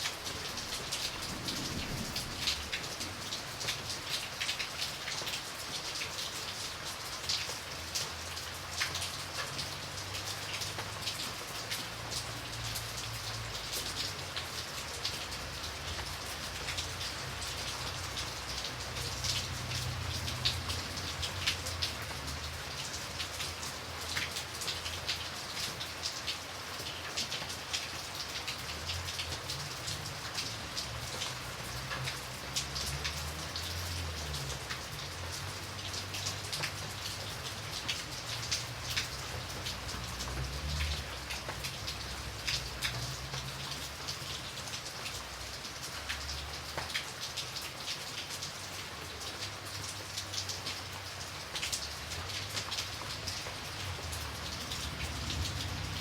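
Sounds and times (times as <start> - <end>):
rain drops on hard surface: 0.0 - 56.0.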